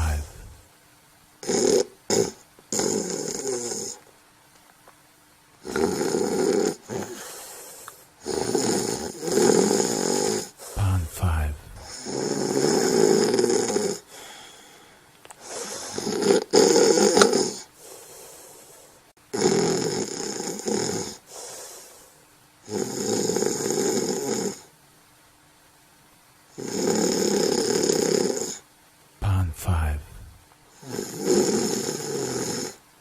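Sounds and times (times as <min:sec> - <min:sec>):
rasping snores: 0:00.0 - 0:00.6, 0:01.4 - 0:04.0, 0:05.6 - 0:11.1, 0:11.7 - 0:14.7, 0:15.4 - 0:21.9, 0:22.6 - 0:24.7, 0:26.5 - 0:28.6, 0:29.9 - 0:32.8.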